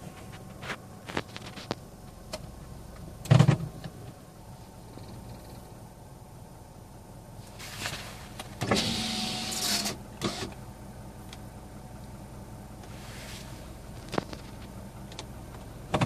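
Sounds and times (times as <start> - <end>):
hiss with steady whine: 4.1 - 14.0
car engine knocking: 13.8 - 16.0.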